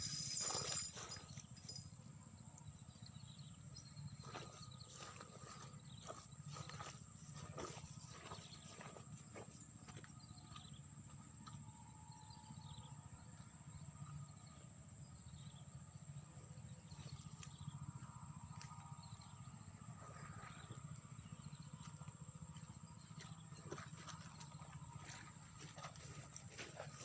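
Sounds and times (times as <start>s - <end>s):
thin high-pitched whine: 0.0s - 5.6s.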